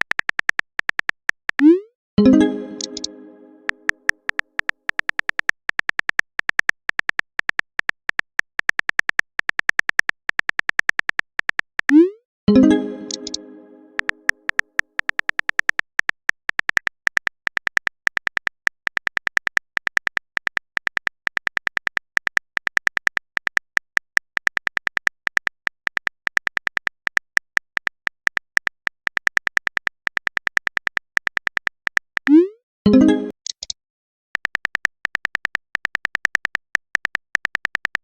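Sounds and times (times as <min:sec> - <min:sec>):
ringing message chime: 0:02.2 - 0:03.9, 0:12.5 - 0:14.3, 0:32.9 - 0:33.4
phone keyboard typing taps: 0:02.8 - 0:12.0, 0:13.0 - 0:32.4, 0:34.4 - 0:38.0.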